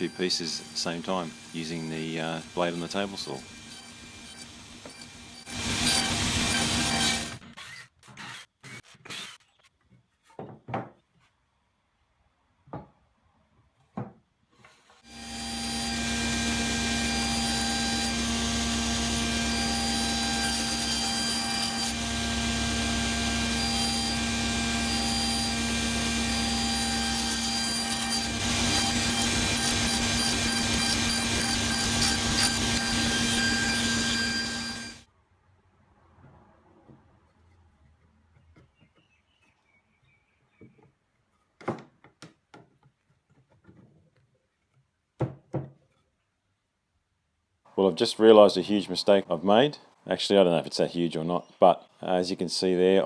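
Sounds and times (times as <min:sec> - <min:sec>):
table saw running: 0:00.0 - 0:07.4, 0:15.1 - 0:35.1.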